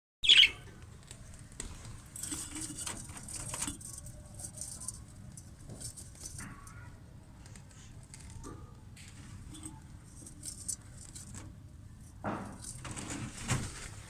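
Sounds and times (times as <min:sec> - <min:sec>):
budgerigars chattering: 0:00.2 - 0:00.6.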